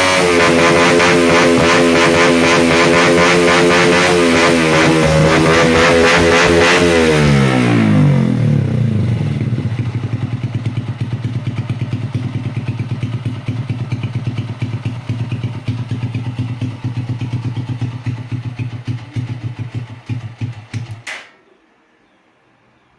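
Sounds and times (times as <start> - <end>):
motorcycle engine idling: 7.8 - 21.0.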